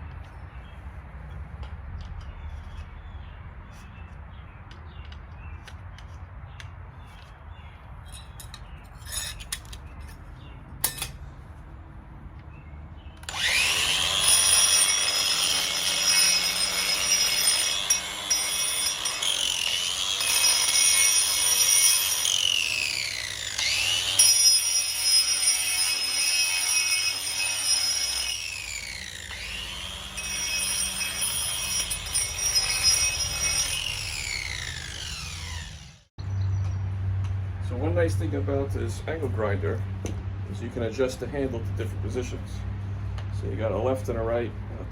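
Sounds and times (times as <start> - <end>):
angle grinder grinding stone: 13.2 - 36.0.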